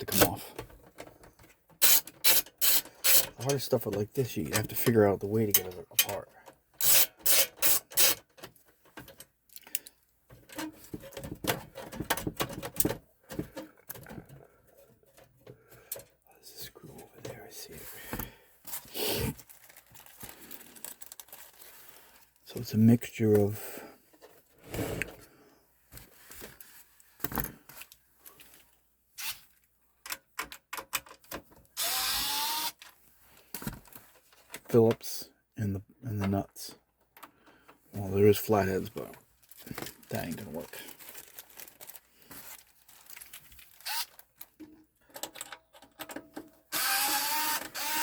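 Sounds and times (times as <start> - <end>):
screwdriver scraping: 1.8 - 3.6, 6.8 - 8.3, 31.8 - 32.7, 43.8 - 44.1, 46.7 - 48.0
small clicks and knocks: 30.0 - 31.7, 44.4 - 46.6.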